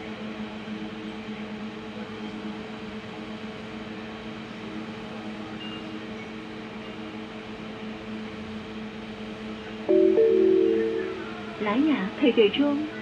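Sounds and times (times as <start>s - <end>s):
low hum with held tones: 9.3s - 13.0s.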